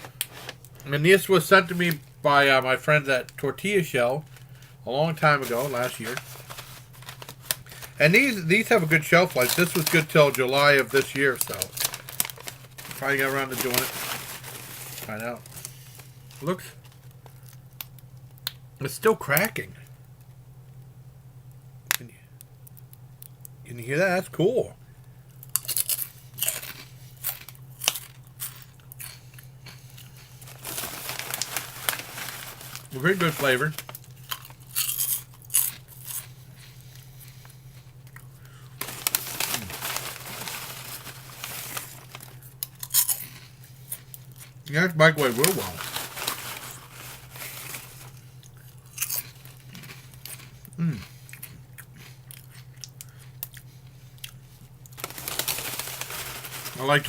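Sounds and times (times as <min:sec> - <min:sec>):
crunchy pork rinds being chewed: 0:05.2 - 0:18.6, 0:25.3 - 0:57.0
person humming: 0:50.8 - 0:51.1.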